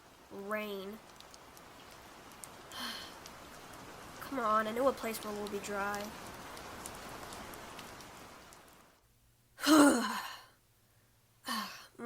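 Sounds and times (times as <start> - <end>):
rain hiss: 0.0 - 12.0
person sighing: 2.7 - 3.1, 9.6 - 10.6, 11.4 - 12.0.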